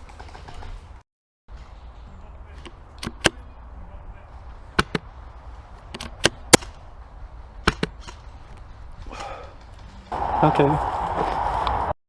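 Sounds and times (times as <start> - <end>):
airsoft gun snaps: 2.6 - 3.4, 4.8 - 5.1, 5.9 - 6.9.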